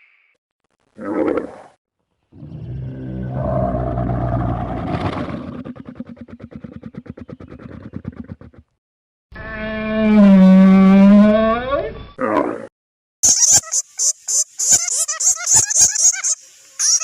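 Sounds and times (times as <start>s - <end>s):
animal growling rattling call: 2.4s - 8.8s.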